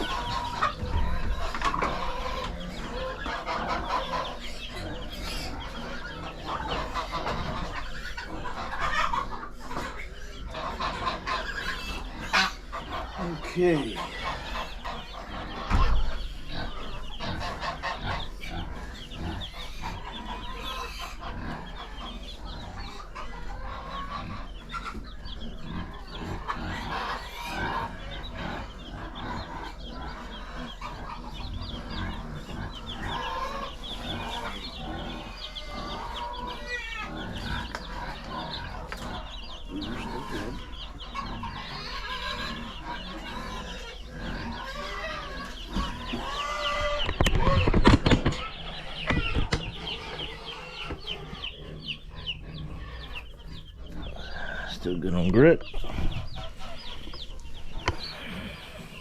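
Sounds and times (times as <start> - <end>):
chicks peeping: 0.0 - 59.0
thump: 15.7 - 16.1.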